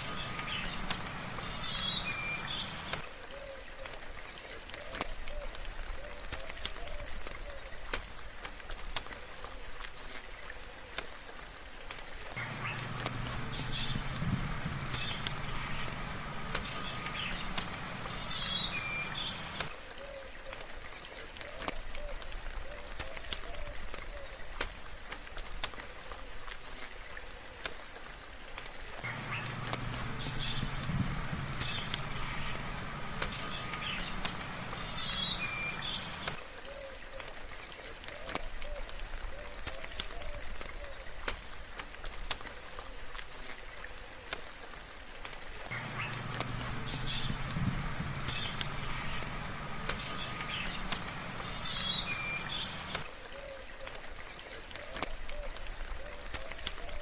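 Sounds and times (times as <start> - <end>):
birds chirping: 0.0 - 3.0, 12.4 - 19.7, 29.0 - 36.4, 45.6 - 53.1
light rain pattering: 0.0 - 57.0
water drips: 0.0 - 57.0.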